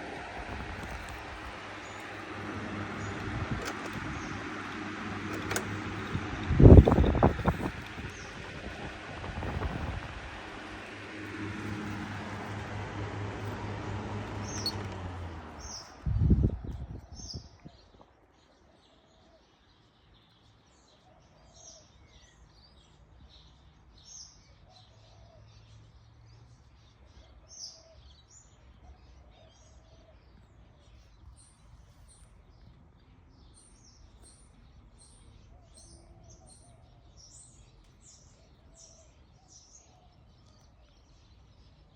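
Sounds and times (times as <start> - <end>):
box fan rushing and humming: 0.0 - 17.5
small birds chirping: 0.0 - 41.9.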